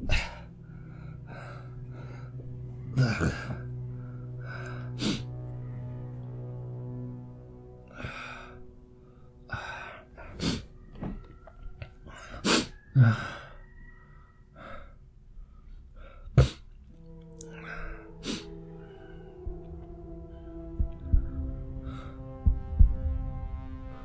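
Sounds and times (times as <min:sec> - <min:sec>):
sharp breaths: 0:08.0 - 0:19.4
sniffing: 0:09.5 - 0:11.2, 0:11.8 - 0:13.7, 0:15.5 - 0:19.4.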